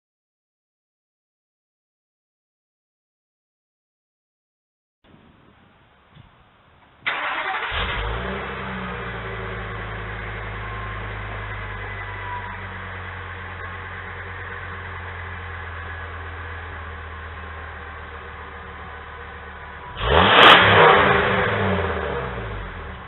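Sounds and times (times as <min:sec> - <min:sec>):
engine starting and idling: 0:07.0 - 0:23.0.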